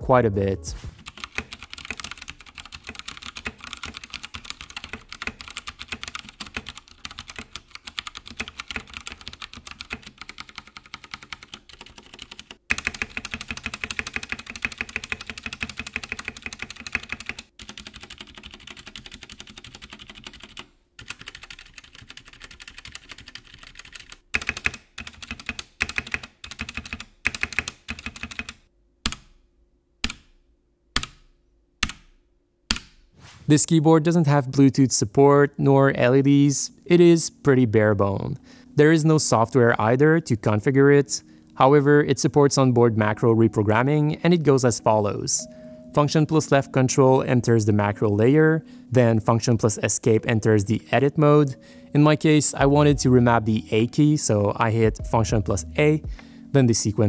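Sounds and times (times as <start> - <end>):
mechanical keyboard typing: 1.0 - 29.2.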